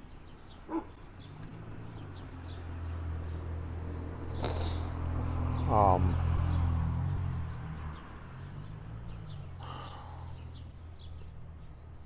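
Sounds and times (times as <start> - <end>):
small birds chirping: 0.0 - 12.0.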